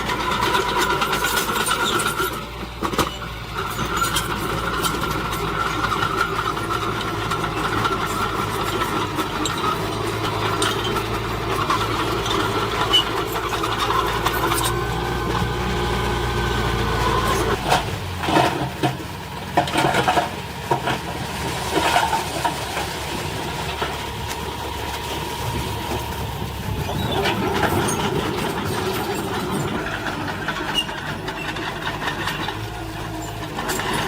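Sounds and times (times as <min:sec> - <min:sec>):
heavy diesel machinery engine: 0:00.0 - 0:34.0
metal clanks and knocks: 0:17.2 - 0:34.0.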